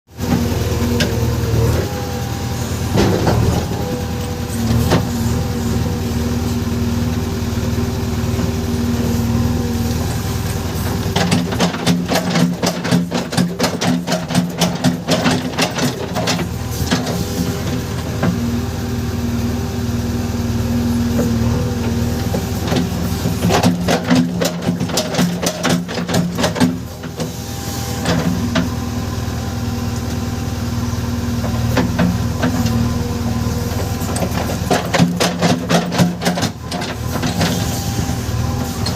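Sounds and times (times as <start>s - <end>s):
diesel engine running: 0.1s - 38.9s.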